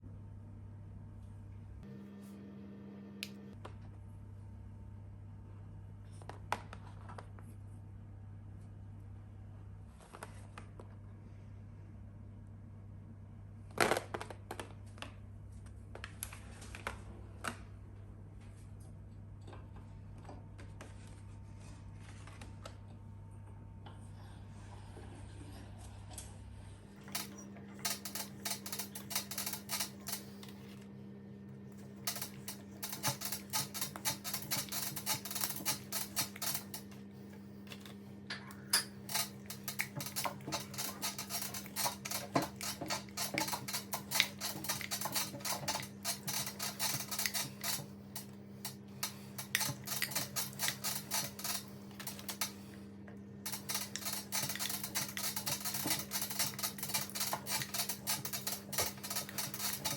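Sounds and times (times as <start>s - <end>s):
candy crackling in grinder: 27.0s - 30.5s, 31.8s - 36.9s, 39.0s - 52.7s, 53.5s - 59.9s
meat grinder motor humming: 53.5s - 59.9s.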